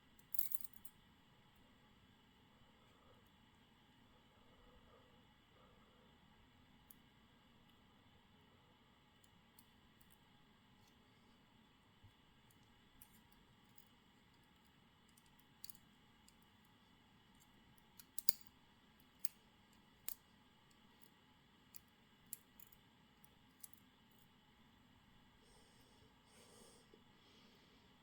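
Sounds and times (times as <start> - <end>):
small clicks of lock pins: 0.2 - 1.0, 12.5 - 16.8, 17.4 - 24.3.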